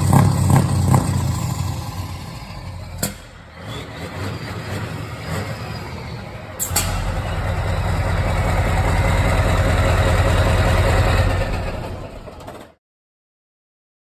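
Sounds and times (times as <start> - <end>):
diesel truck engine running: 0.0 - 12.7.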